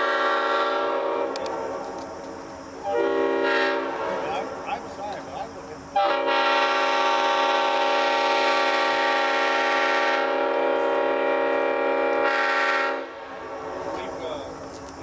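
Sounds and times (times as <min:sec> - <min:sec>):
train horn chord: 0:00.0 - 0:02.0, 0:02.8 - 0:04.8, 0:06.0 - 0:14.0.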